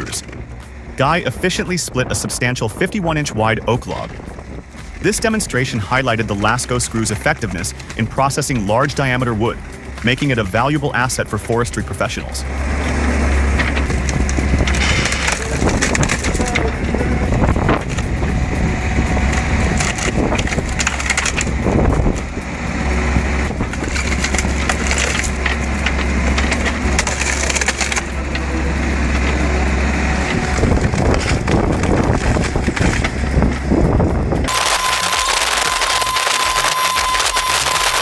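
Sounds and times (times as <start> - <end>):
excavator engine running: 0.0 - 38.0
wood cracking and splintering: 12.6 - 33.8, 34.4 - 38.0.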